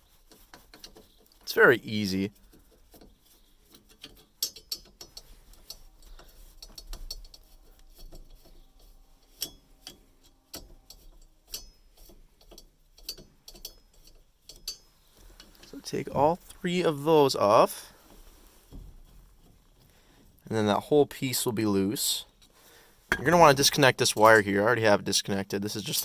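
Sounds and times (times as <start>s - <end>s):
metallic clicks of screwdriver: 3.7s - 8.6s.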